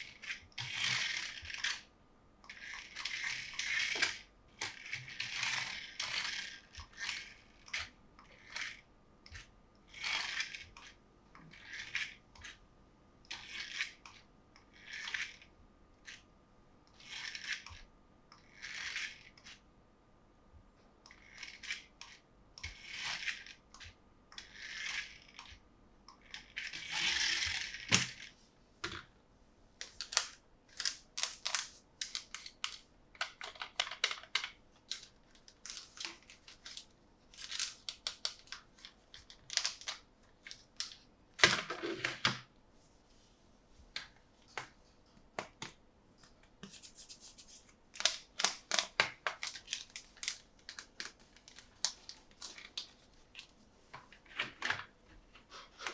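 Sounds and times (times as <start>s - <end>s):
packaging rustling and tearing: 29.9s - 32.8s, 34.9s - 41.0s, 47.4s - 53.6s.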